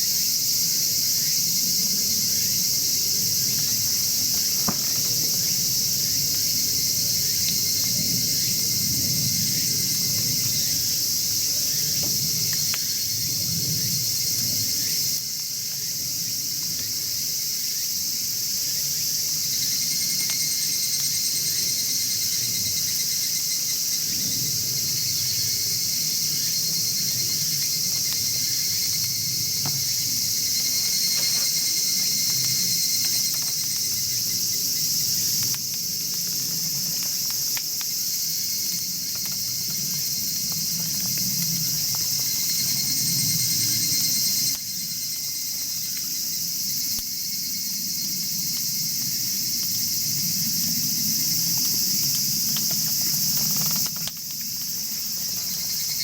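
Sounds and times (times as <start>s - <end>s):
insects trilling: 0.0s - 56.0s
wood fire crackling: 27.8s - 43.0s.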